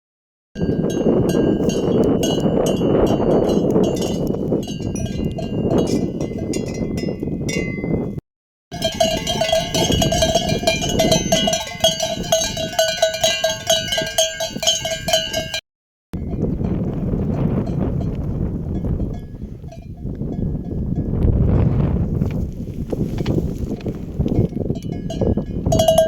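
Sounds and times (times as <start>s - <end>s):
sheep bells clinking: 0.6s - 8.1s, 8.7s - 15.6s, 16.2s - 21.1s, 24.3s - 26.0s
deeper bell ringing: 8.7s - 15.6s.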